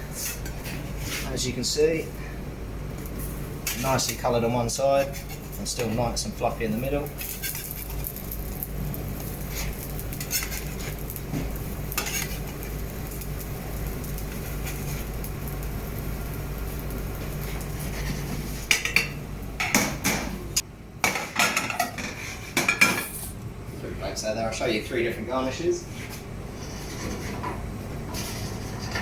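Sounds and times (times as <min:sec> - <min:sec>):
pancakes sizzling in pans: 0:06.8 - 0:19.0
utensils clattering against pans: 0:17.3 - 0:20.4, 0:21.0 - 0:23.2.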